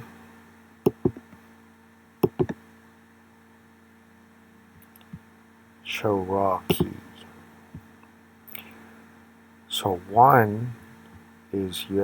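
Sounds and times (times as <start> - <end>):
low electrical hum: 0.0 - 12.0
computer mouse clicks: 2.2 - 2.6.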